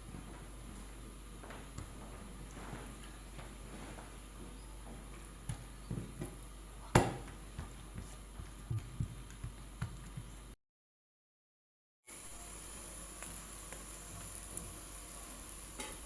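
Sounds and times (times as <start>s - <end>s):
objects being handled knocking: 7.0s - 10.4s.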